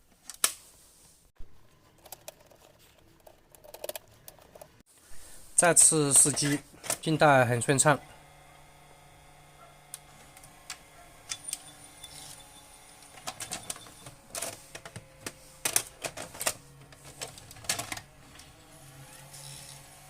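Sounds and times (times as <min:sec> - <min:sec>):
mechanical clicks and rattles: 0:02.0 - 0:04.8
faint motor hum: 0:03.0 - 0:20.0.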